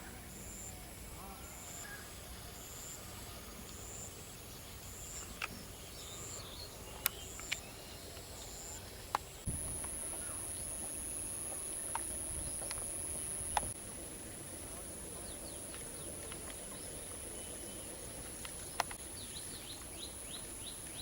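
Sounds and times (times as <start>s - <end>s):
insect chirping: 0.0s - 21.0s
high-pitched insect buzz: 8.4s - 15.9s
sharp clicks: 11.9s - 13.8s.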